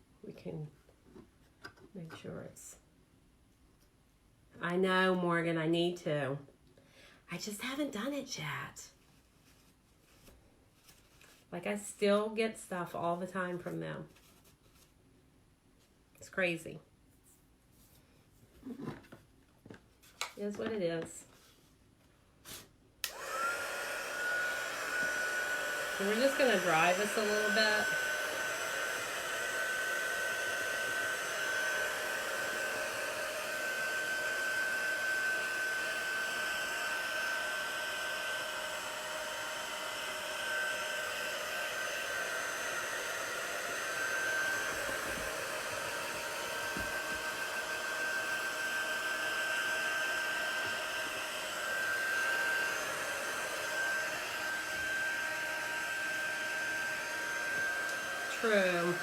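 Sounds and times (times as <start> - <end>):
small craft dryer blowing: 22.4 - 59.0.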